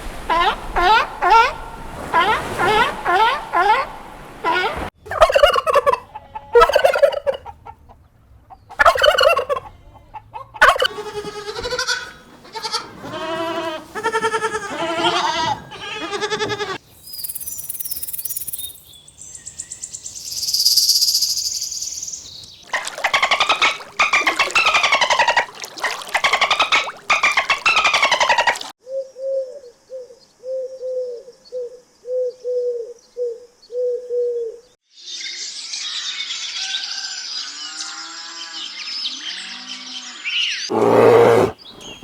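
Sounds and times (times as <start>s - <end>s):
poultry calling: 0.3s - 7.8s, 8.7s - 16.8s, 40.7s - 42.0s.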